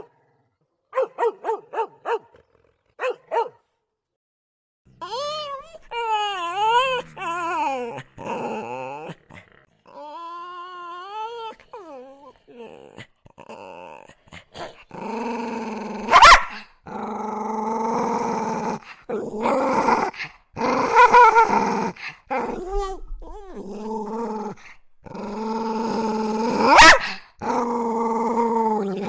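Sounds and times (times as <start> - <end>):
dog barking: 0.9 - 2.4, 3.0 - 3.7, 16.1 - 16.6, 26.7 - 27.1
small dog growling: 5.4 - 29.0.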